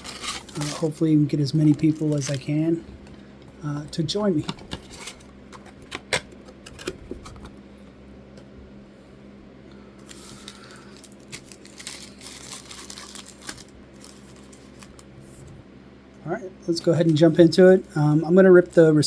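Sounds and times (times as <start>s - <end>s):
card packs rustling: 0.0s - 2.8s, 3.8s - 7.6s, 10.0s - 15.2s.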